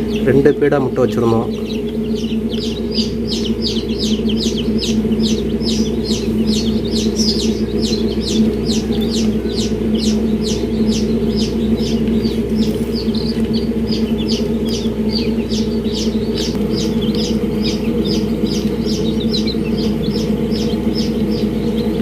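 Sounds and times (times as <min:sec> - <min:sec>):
chicks peeping: 0:00.0 - 0:22.0
steady low hum: 0:00.0 - 0:22.0.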